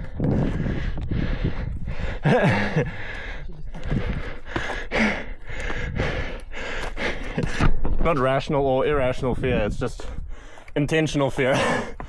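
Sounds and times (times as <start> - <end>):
wind rumble on microphone: 0.0 - 4.6, 5.4 - 10.6
heavy quick breathing: 0.4 - 7.7
person grunting: 11.5 - 11.9.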